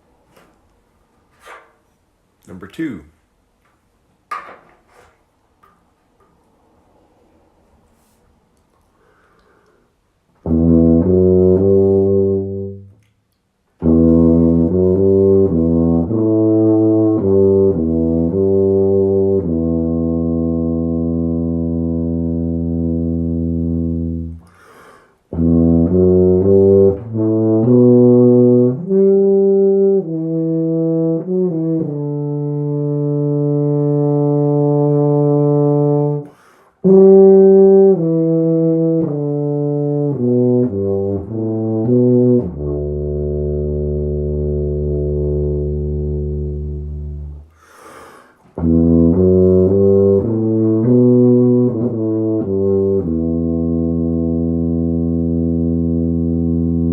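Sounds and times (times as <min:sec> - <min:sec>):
player breathing: 0:07.9 - 0:10.0, 0:24.4 - 0:25.3, 0:36.3 - 0:36.8, 0:47.5 - 0:48.6
tuba melody: 0:10.2 - 0:24.7, 0:25.3 - 0:47.6, 0:48.5 - 0:56.9.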